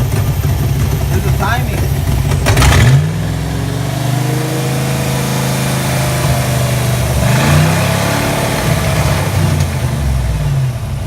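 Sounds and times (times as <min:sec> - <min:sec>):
car engine idling and revving: 0:00.0 - 0:11.0
men talking: 0:01.1 - 0:02.1.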